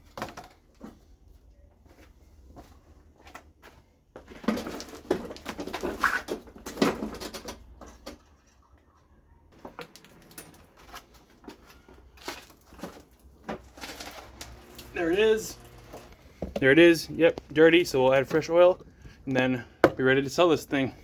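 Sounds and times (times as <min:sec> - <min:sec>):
lawnmower scraping and clunking: 0:09.6 - 0:17.5.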